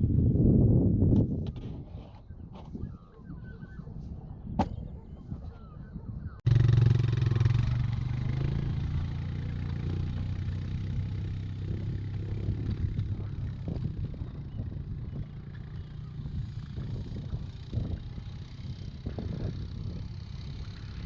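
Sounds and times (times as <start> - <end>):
quad bike engine running: 6.5 - 21.0.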